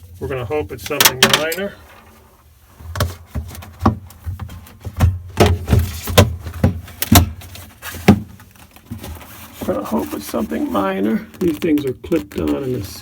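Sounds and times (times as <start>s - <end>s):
knocks and clicks of plastic parts: 2.9s - 8.4s.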